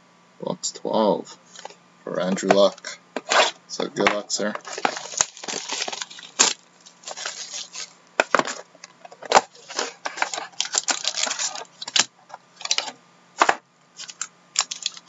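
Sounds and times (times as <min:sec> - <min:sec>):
packaging crinkling and rustling: 0:04.5 - 0:12.9, 0:14.0 - 0:15.0
packaging snapping: 0:04.6 - 0:08.6, 0:09.2 - 0:12.9, 0:14.0 - 0:15.0.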